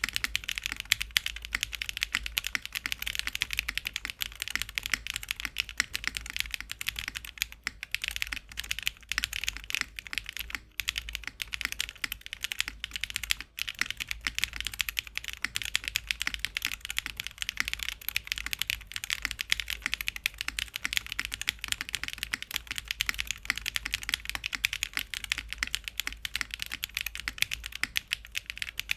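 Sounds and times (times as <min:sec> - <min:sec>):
mechanical keyboard typing: 0:00.0 - 0:28.9.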